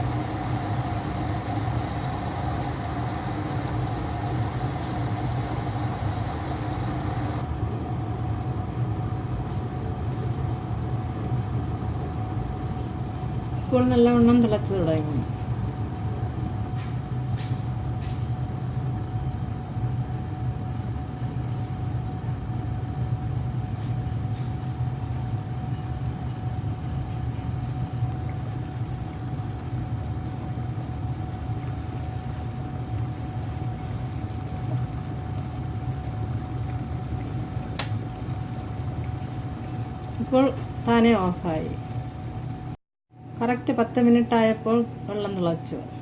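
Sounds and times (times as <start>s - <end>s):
kettle water boiling: 0.0s - 42.8s, 43.9s - 46.0s
kettle switch click: 37.8s - 38.0s.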